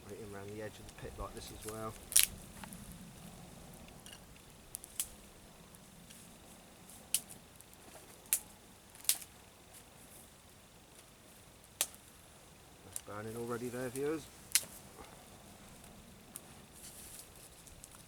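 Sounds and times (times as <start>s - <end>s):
wood fire crackling: 0.0s - 18.0s
sharp fire pops: 0.9s - 2.8s.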